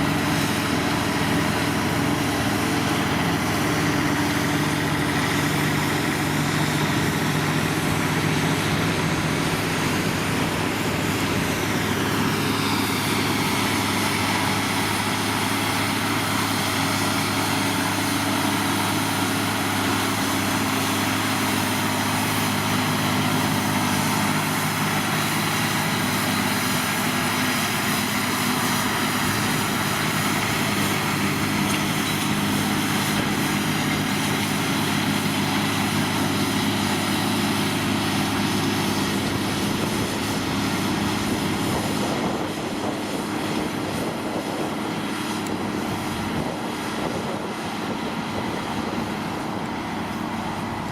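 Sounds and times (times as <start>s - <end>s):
tractor diesel engine running: 0.0s - 50.9s.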